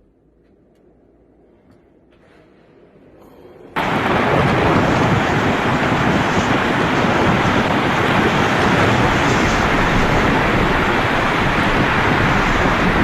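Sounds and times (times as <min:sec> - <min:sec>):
loud rushing noise: 0:03.8 - 0:13.0.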